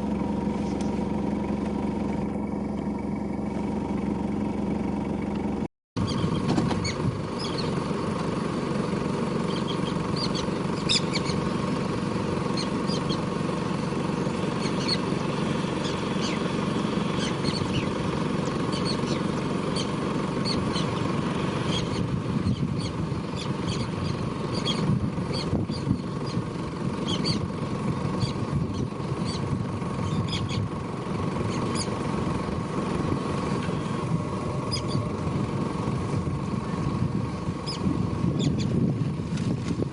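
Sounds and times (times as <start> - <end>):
vehicle engine idling: 0.0 - 39.9
birds chirping: 6.0 - 8.5, 9.1 - 35.6, 36.5 - 38.8.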